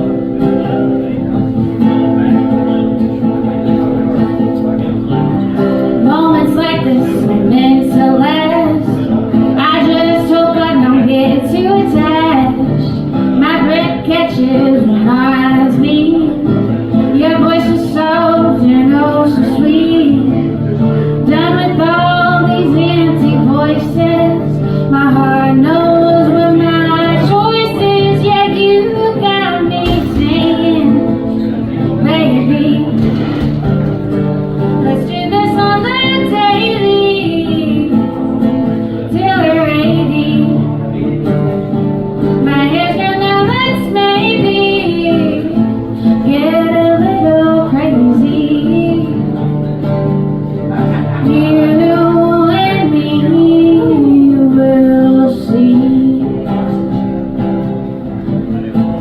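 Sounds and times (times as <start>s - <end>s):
strummed acoustic guitar: 0.0s - 59.0s
woman singing: 6.0s - 33.3s, 34.6s - 40.8s, 42.4s - 49.5s, 51.2s - 56.9s.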